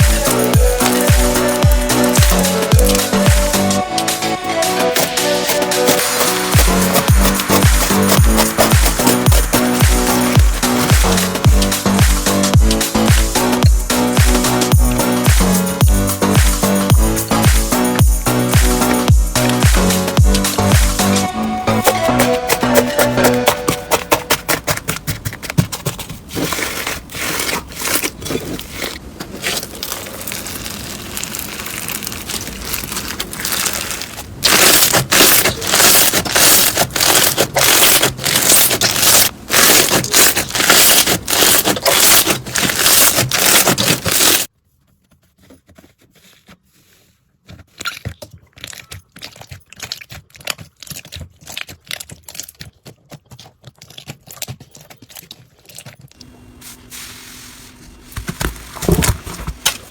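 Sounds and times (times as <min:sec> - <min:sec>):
slime squeezed crackling and clicking: 0:29.4 - 0:44.4.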